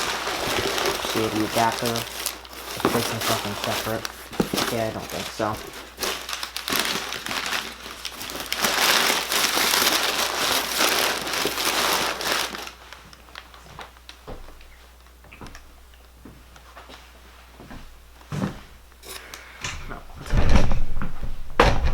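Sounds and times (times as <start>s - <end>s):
packaging being crumpled: 0.0s - 14.7s.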